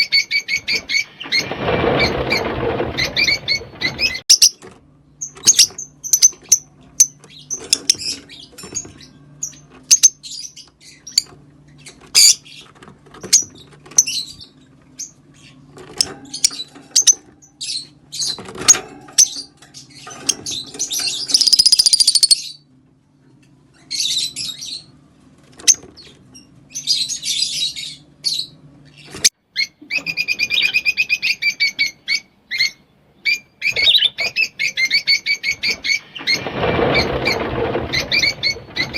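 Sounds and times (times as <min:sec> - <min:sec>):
lovebirds chirping: 0:00.0 - 0:18.4, 0:19.2 - 0:22.6, 0:25.7 - 0:38.9.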